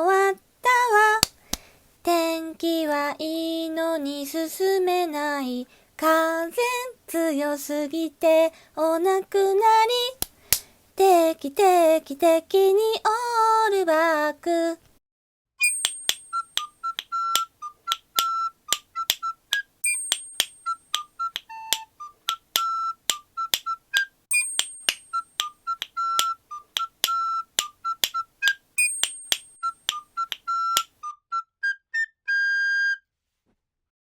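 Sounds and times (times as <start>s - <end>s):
hand claps: 1.2s - 1.7s, 15.7s - 30.9s
castanet clicks: 15.7s - 30.9s.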